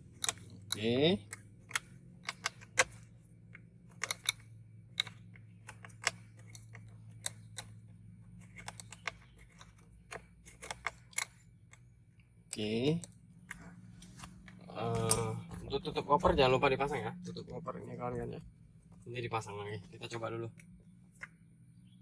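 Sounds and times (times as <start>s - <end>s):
hex key clicking on bolts: 0.0s - 7.8s
steady low hum: 0.0s - 22.0s.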